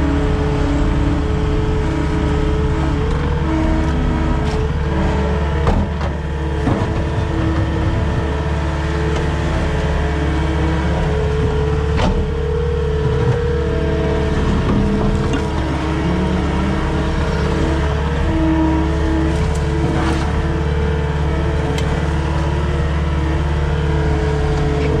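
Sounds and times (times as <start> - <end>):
skid steer engine running: 0.0 - 25.0.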